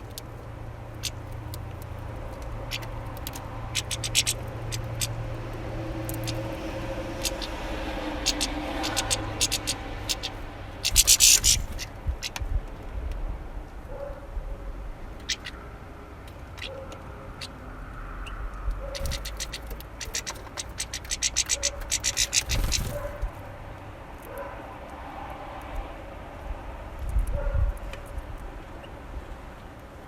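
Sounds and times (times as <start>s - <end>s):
beaks pecking at feeder: 0.0s - 12.4s, 15.1s - 15.6s, 18.2s - 23.4s.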